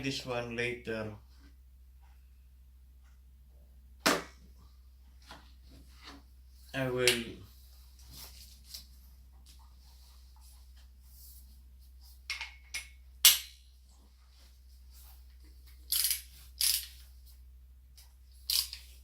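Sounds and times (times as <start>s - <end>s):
metal sockets clinking: 15.9s - 17.0s, 18.5s - 18.9s.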